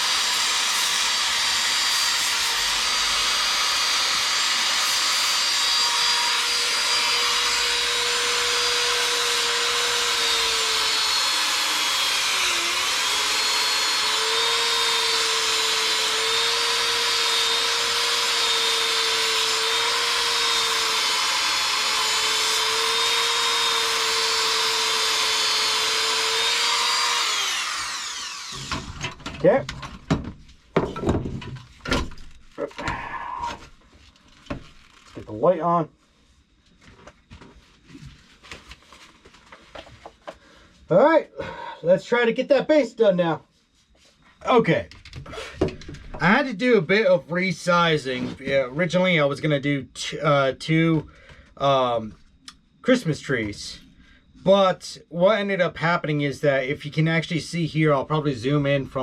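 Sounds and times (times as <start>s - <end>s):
bench grinder running: 0.0s - 29.1s.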